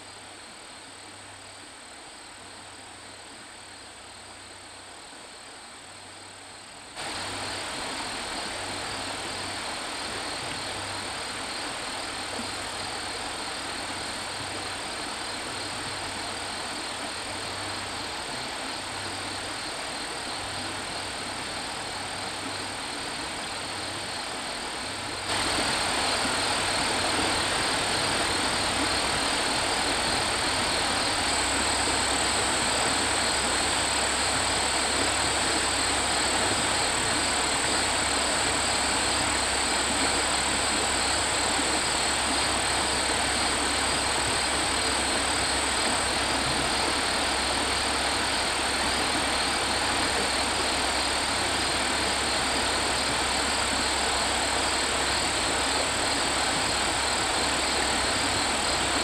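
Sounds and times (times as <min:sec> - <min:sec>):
steady rushing noise: 0:20.9 - 0:59.0.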